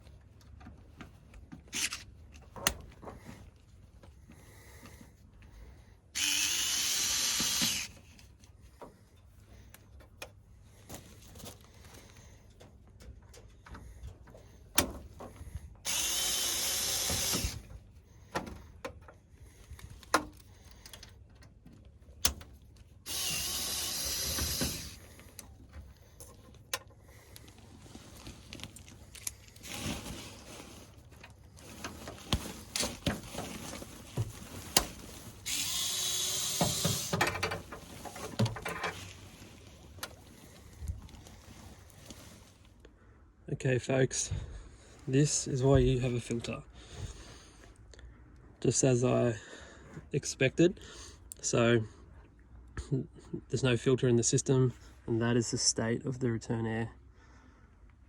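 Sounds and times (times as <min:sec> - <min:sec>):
clicks and handling noise: 0:00.0 - 0:04.1, 0:24.1 - 0:42.8
cordless power driver running screws: 0:01.7 - 0:02.1, 0:06.2 - 0:08.1, 0:15.8 - 0:17.7, 0:23.1 - 0:25.4, 0:34.7 - 0:39.2.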